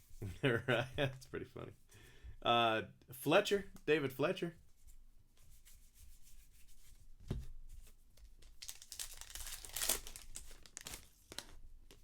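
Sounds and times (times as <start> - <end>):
wrapper tearing and crinkling: 8.5 - 11.6.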